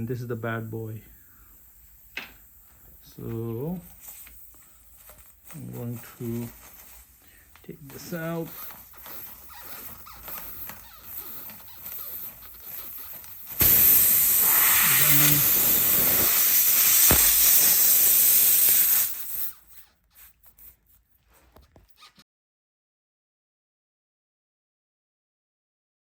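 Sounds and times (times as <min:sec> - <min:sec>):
air hissing from tire puncture: 0:01.0 - 0:19.6.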